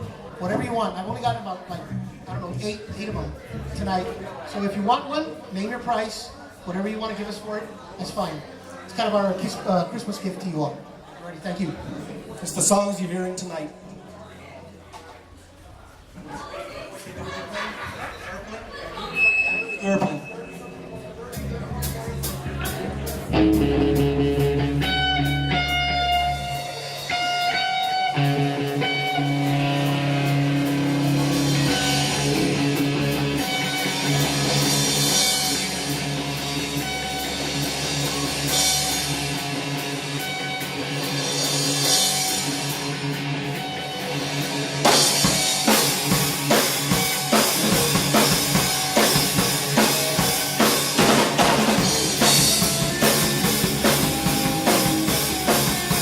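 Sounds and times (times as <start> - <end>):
rock band playing: 0.0 - 4.5, 19.7 - 56.0
drum kit beat: 21.3 - 56.0
guitar chords: 21.4 - 56.0.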